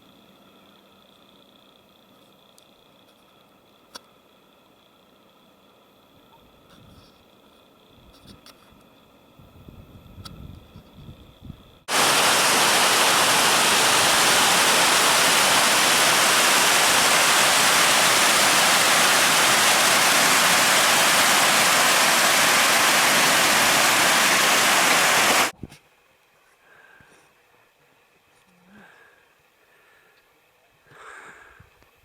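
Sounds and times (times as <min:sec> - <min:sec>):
waterfall rushing: 0:11.9 - 0:25.5.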